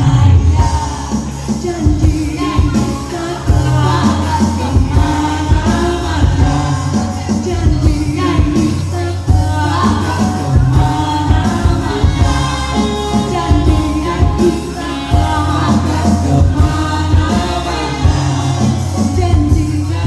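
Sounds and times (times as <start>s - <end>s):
band playing pop song: 0.0s - 20.0s
drum beats: 0.0s - 20.0s
person singing: 0.0s - 20.0s
sustained bass line: 0.0s - 20.0s.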